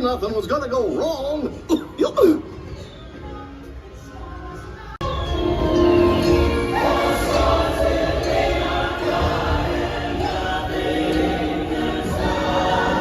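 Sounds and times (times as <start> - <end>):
choir singing over soundtrack music: 4.1 - 13.0.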